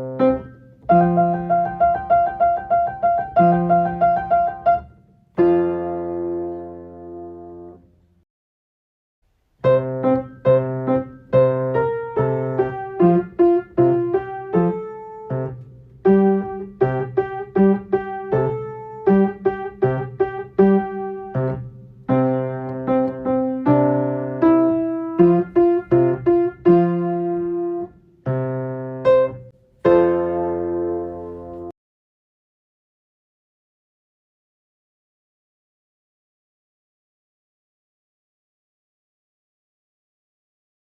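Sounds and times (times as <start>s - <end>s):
piano playing a simple tune: 0.0s - 7.9s, 9.6s - 31.8s.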